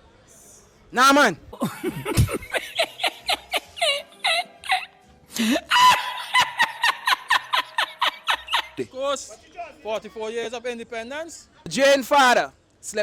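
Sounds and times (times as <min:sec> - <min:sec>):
background music: 0:00.0 - 0:13.0
group of people laughing: 0:01.6 - 0:08.9.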